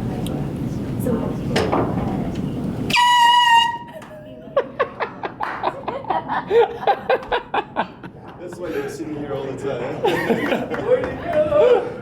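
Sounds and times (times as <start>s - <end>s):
air horn honk: 2.9s - 3.9s
people laughing: 3.9s - 12.0s.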